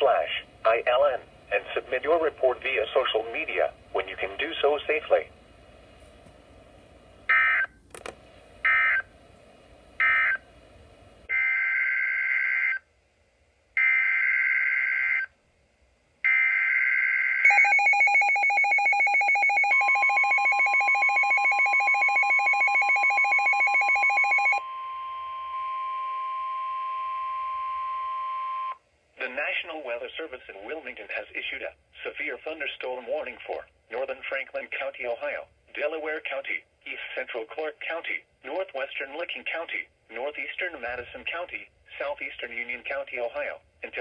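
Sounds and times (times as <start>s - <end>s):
rapidly pulsing alarm: 11.3s - 12.8s, 13.8s - 15.3s, 16.3s - 28.8s
steady warning alarm tone: 16.3s - 28.8s.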